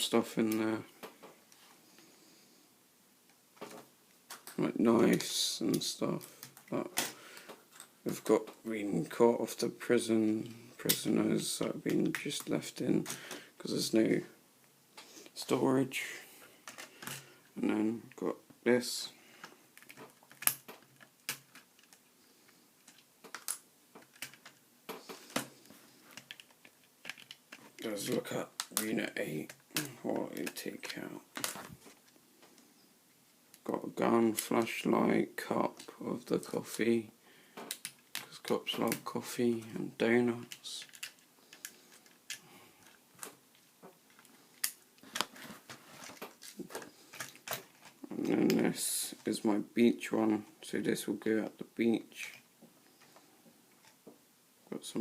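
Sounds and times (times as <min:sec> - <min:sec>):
plastic bricks clicking: 0:19.8 - 0:22.1, 0:22.8 - 0:28.8, 0:37.6 - 0:38.3, 0:40.5 - 0:43.3.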